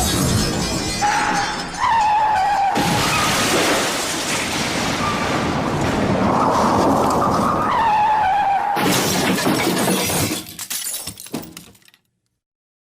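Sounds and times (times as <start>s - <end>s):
debris clattering and tinkling: 0.0s - 4.8s, 8.8s - 12.1s
glass shattering: 0.0s - 5.5s, 8.8s - 12.0s
loud car crash: 2.7s - 10.6s.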